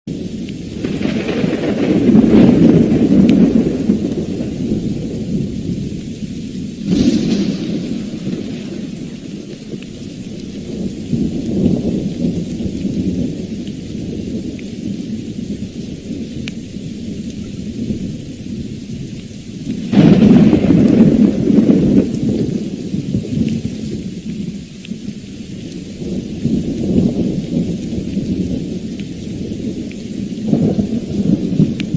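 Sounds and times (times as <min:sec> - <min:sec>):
steady rain: 0:00.0 - 0:31.9
rumbling thunder: 0:00.1 - 0:31.9
sharp thunderclap: 0:00.7 - 0:06.0, 0:06.6 - 0:13.4, 0:19.8 - 0:24.0, 0:26.0 - 0:31.9.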